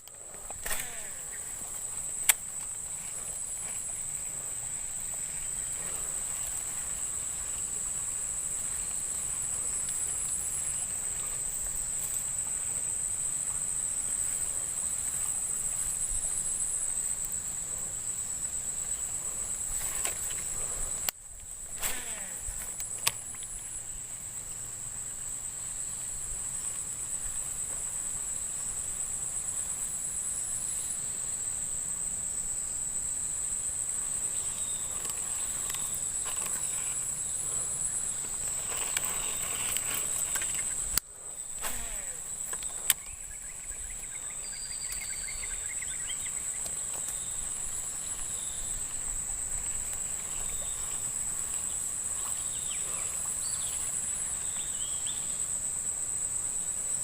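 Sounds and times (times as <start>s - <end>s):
sharp clicks: 0.0s - 1.3s
higher insect tone: 0.0s - 57.0s
insects droning: 0.0s - 57.0s.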